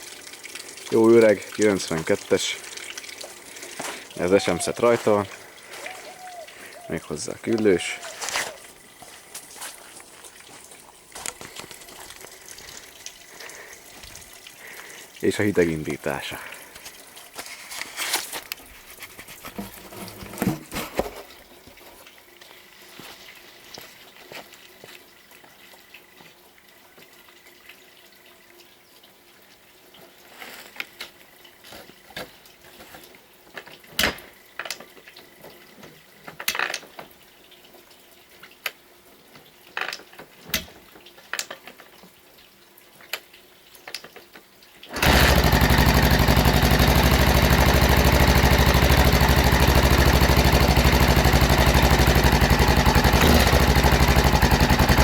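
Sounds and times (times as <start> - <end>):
motorcycle engine starting and running: 19.2 - 21.2, 44.9 - 55.0
engine mechanical rattle: 44.9 - 55.0.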